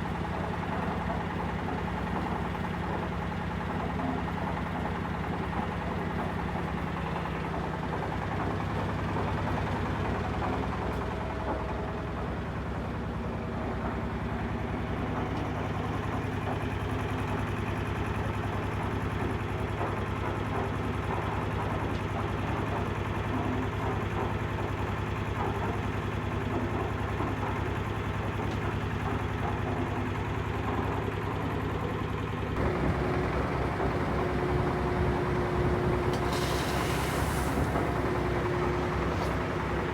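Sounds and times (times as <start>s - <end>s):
heavy engine idling: 0.0s - 39.9s.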